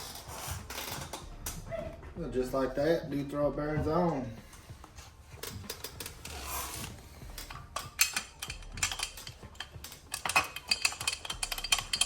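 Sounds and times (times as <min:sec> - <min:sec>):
metal scrape: 0:04.4 - 0:12.0
metal clicks and clatter: 0:05.4 - 0:12.0.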